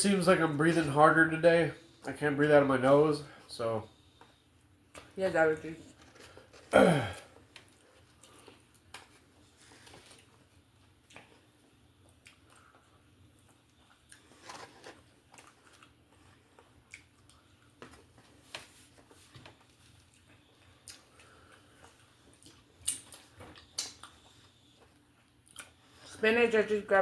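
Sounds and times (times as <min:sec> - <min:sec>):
person chewing: 0:06.6 - 0:09.2, 0:10.0 - 0:18.3, 0:19.0 - 0:26.1.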